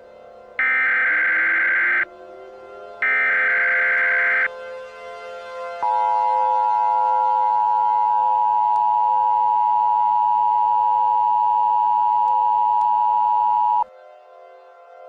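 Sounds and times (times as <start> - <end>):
two-tone alert tone: 0.6 - 2.0, 3.0 - 4.5
faint drone: 0.6 - 2.1, 3.0 - 4.5.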